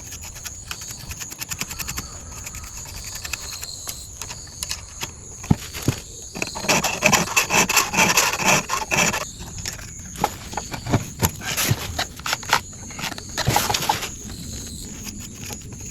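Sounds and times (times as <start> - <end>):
file rasping on saw chain: 0.0 - 5.0, 5.8 - 9.4.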